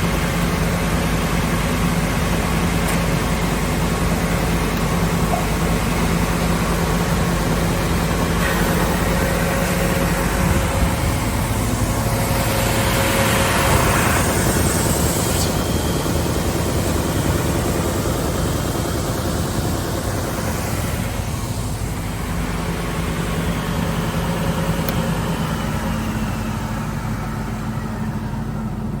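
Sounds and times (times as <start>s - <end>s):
sander motor hum: 2.0s - 29.0s
sanding hiss: 11.2s - 16.6s.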